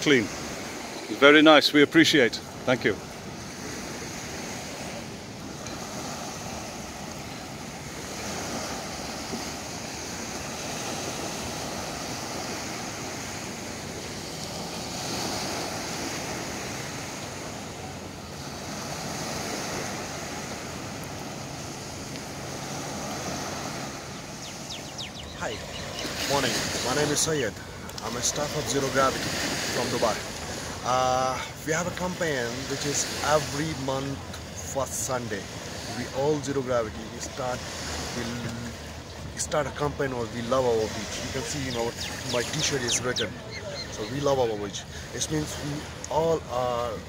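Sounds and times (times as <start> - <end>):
sea waves washing onto beach: 0.0 - 47.0.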